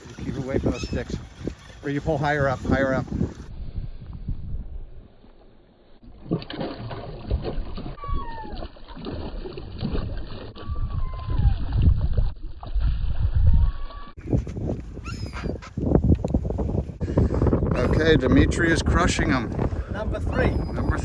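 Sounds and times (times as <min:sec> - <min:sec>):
fish splashing at surface: 0:06.1 - 0:13.4.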